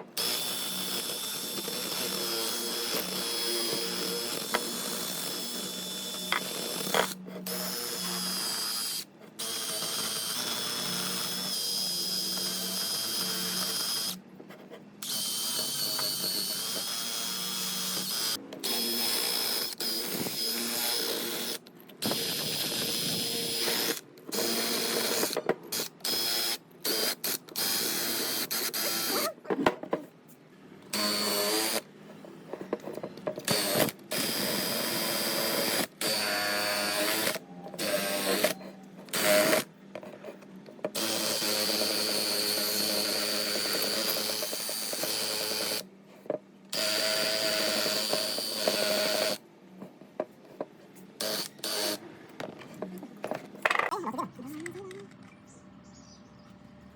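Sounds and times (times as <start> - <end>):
electric power tool whining: 0.2 - 14.2, 15.0 - 29.3, 30.9 - 31.8, 33.4 - 39.7, 46.7 - 49.4, 51.2 - 52.0.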